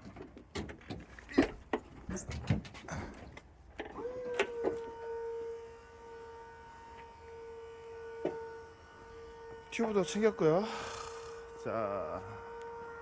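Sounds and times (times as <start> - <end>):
small electric motor whining: 3.8 - 13.0.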